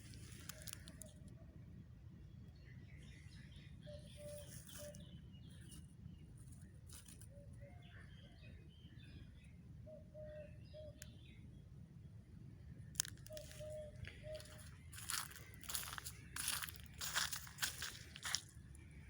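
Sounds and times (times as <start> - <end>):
steady low rumble: 8.0 - 19.0
high bird chirps: 13.0 - 18.4.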